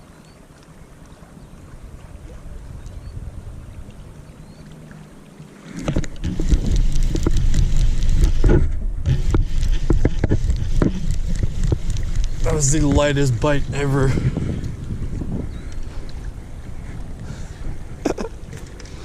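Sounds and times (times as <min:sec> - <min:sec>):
wind buffeting microphone: 0:00.7 - 0:04.7, 0:05.8 - 0:19.0.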